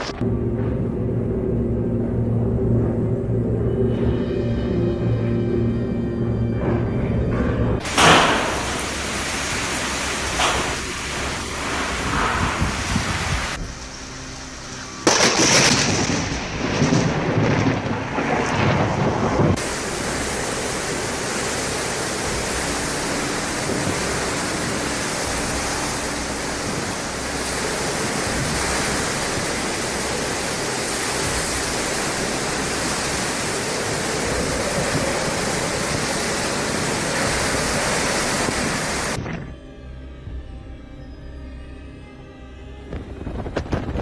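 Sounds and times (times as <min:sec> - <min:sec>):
loud rushing noise: 0:07.8 - 0:39.5.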